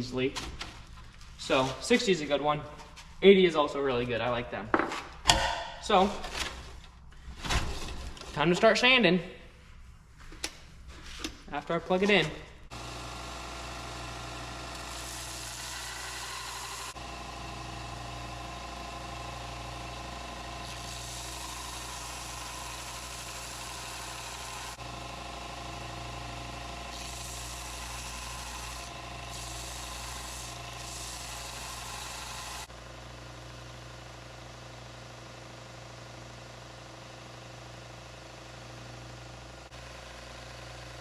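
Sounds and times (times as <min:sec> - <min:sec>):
belt sander humming: 0:12.1 - 0:34.9.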